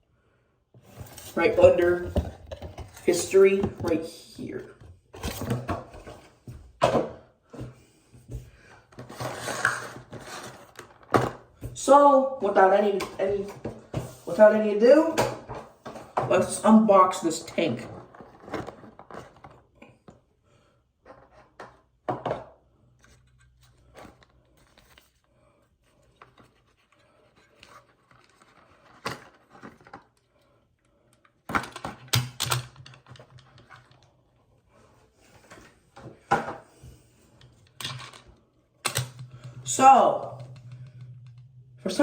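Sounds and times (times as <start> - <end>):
faint low hum: 39.0 - 42.0.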